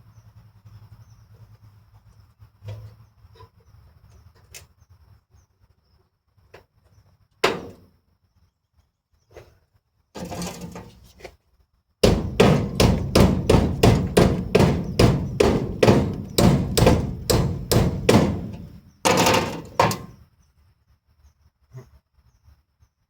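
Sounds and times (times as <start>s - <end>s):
hammer striking steel: 12.0s - 20.1s.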